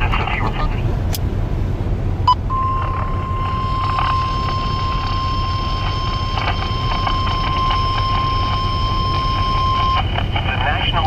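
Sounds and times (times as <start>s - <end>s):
vehicle road rumble: 0.0s - 11.0s
high steady alarm beep: 2.3s - 10.1s.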